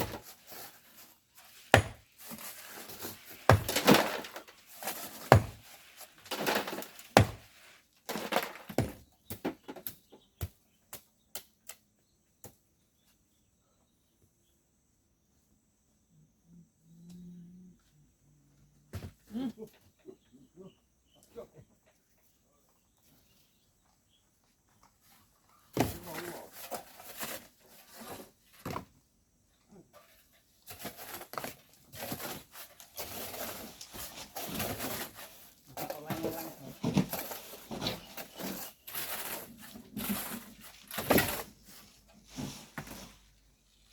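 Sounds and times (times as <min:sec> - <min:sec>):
hand tools scraping sand: 0:00.0 - 0:08.6, 0:25.8 - 0:28.5, 0:30.2 - 0:43.6
sharp knocks on stone: 0:01.8 - 0:02.0.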